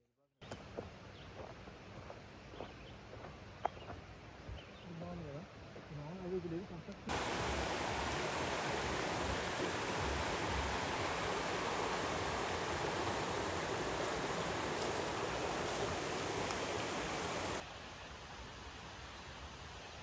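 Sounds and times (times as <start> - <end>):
flowing water rushing: 7.1 - 17.6.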